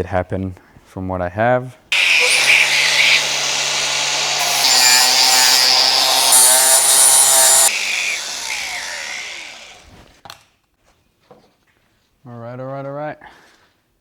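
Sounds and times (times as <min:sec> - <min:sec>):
power tool cutting steel pipe: 0:01.9 - 0:10.1.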